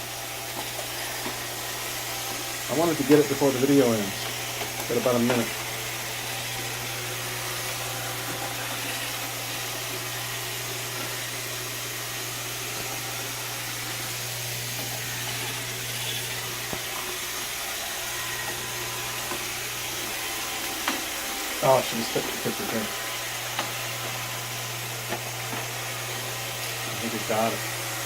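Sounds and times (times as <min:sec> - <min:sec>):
robot vacuum running: 0:00.0 - 0:28.0.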